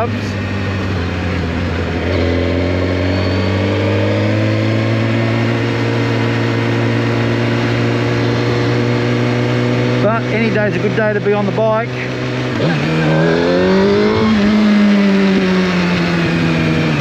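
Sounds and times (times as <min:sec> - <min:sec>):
motorcycle engine running: 0:00.0 - 0:17.0.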